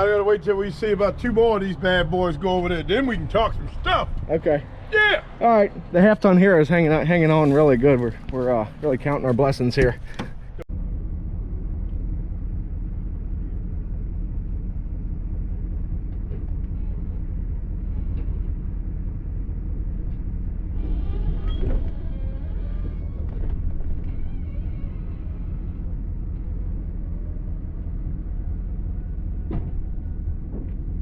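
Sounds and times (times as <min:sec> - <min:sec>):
truck engine and road rumble: 0:00.0 - 0:31.0
faint squeaks: 0:20.7 - 0:27.4.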